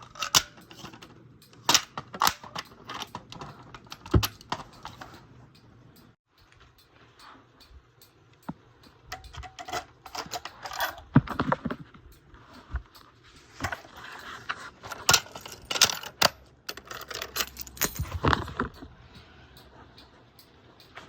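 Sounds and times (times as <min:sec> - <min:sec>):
sharp metal clicks and clunks: 0:00.0 - 0:06.9, 0:07.6 - 0:21.0
metallic jangling: 0:09.1 - 0:11.2, 0:14.8 - 0:18.9.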